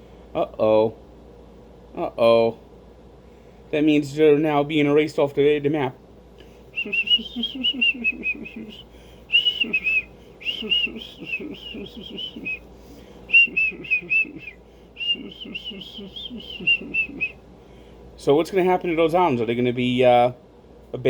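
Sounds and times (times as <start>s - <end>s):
person whistling a tune: 6.7s - 12.6s, 13.3s - 17.4s.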